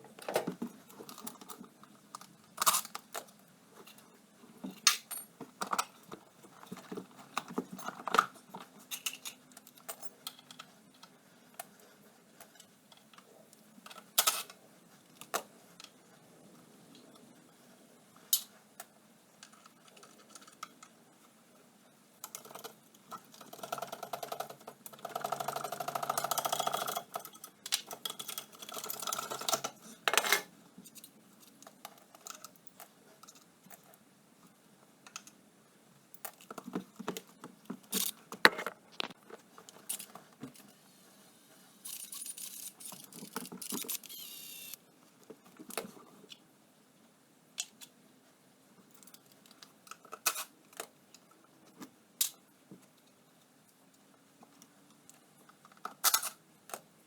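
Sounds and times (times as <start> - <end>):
tools and metal parts clinking: 4.7 - 10.7.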